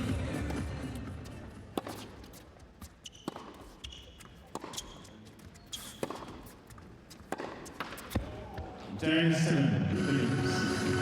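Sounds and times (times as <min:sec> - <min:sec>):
shoes squeaking: 0:01.0 - 0:08.9
tennis ball struck and bouncing: 0:01.7 - 0:08.4.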